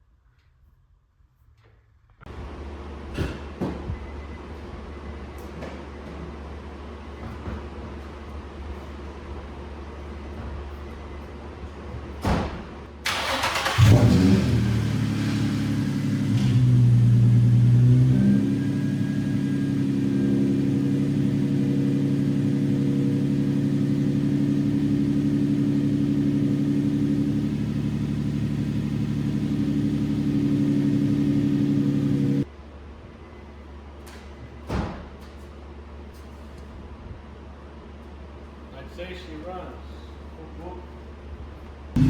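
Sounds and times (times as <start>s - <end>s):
car engine cranking and idling: 13.0s - 32.5s.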